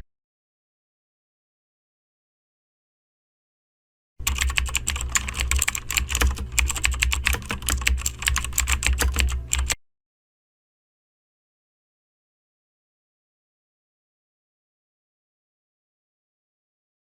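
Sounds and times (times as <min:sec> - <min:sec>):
fast typing on keyboard: 0:04.2 - 0:09.8
steady low hum: 0:04.2 - 0:09.8.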